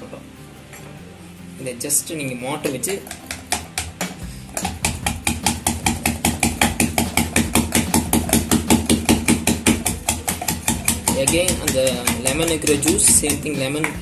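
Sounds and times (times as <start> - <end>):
muddler pounding ice in glass: 2.9 - 14.0.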